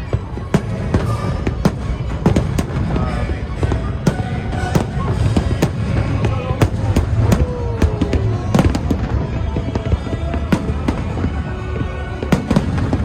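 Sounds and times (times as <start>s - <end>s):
fireworks bangs and crackles: 0.0s - 13.0s.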